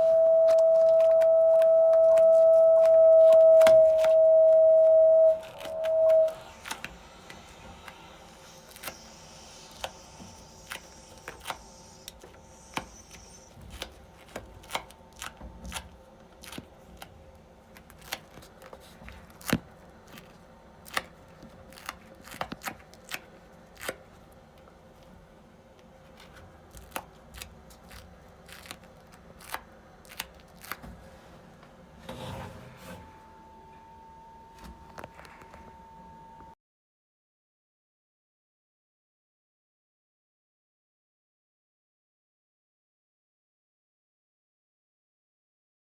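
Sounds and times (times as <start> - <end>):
faint steady hum: 0.0 - 36.6.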